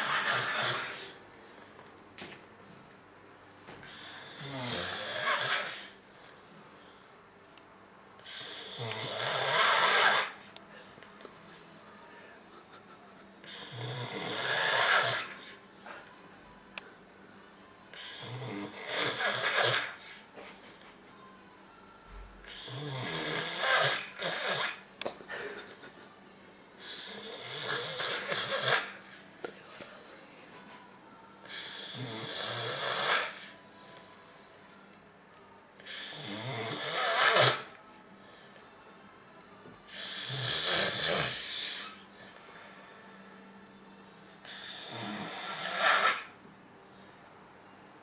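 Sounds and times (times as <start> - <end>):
person snoring: 0.0 - 1.2, 3.8 - 6.0, 8.2 - 10.5, 13.4 - 15.6, 17.9 - 20.2, 22.4 - 24.8, 26.8 - 29.2, 31.4 - 33.6, 35.8 - 37.7, 39.9 - 43.2, 44.4 - 46.4.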